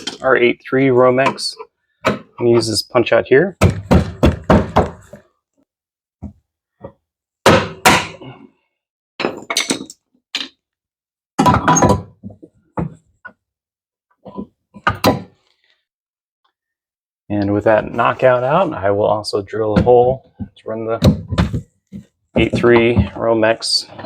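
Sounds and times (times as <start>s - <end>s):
sharp knocks on metal box: 3.6s - 5.1s, 7.5s - 8.2s.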